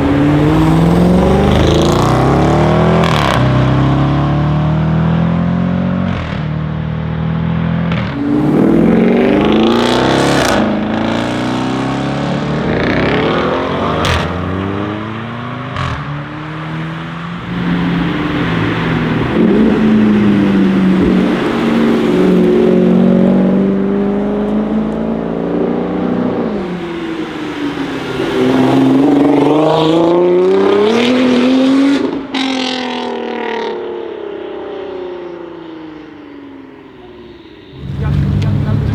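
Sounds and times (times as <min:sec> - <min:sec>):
car engine accelerating hard: 0:00.0 - 0:38.9
exhaust pops and crackles: 0:37.8 - 0:38.9.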